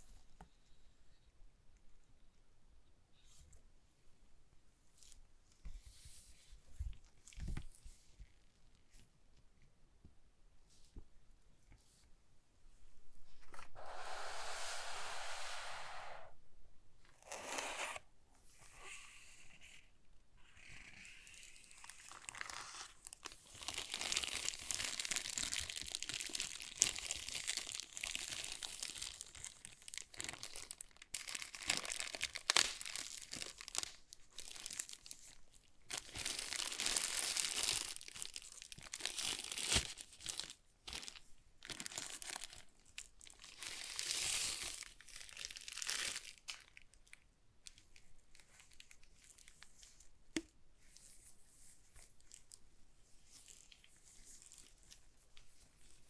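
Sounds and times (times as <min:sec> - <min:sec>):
packaging crinkling and rustling: 0:21.6 - 0:50.1.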